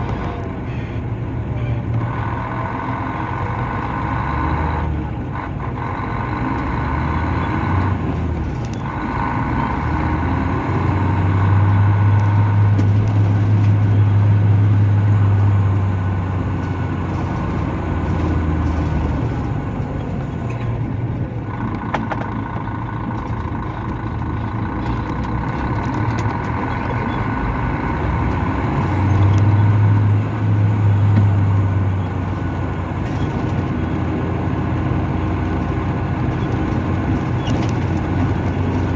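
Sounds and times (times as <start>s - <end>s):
bus diesel engine drone: 0.0s - 38.9s.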